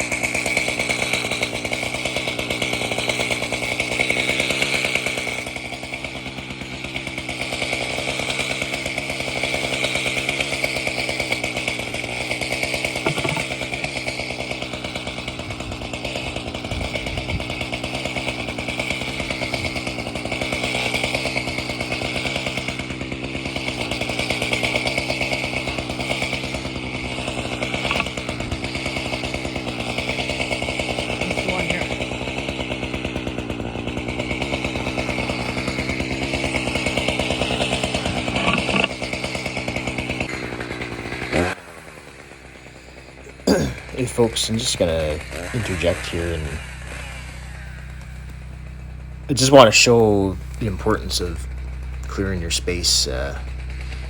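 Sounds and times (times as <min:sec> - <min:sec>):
chainsaw engine idling: 0:00.0 - 0:54.0.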